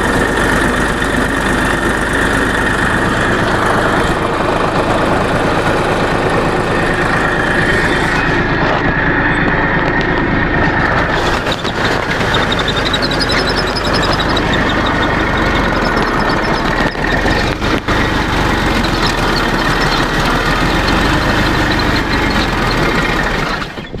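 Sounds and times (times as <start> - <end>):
rapid mechanical knocking: 0.0 - 24.0
tractor engine running: 0.0 - 24.0.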